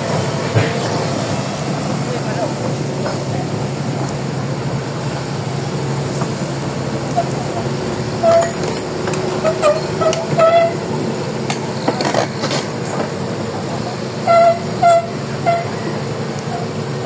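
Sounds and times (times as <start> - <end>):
excavator engine drone: 0.0 - 17.0
metal clanks: 8.2 - 10.8
short high squeals: 14.2 - 16.0.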